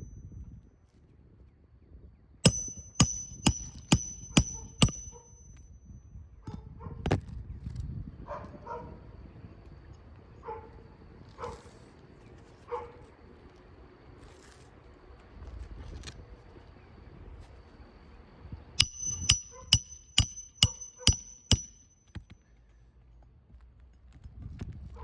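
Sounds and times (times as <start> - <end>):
hammer blows with metallic ring: 2.4 - 6.7, 18.8 - 22.3
dog barking: 8.3 - 9.0, 10.4 - 10.8, 12.7 - 13.0.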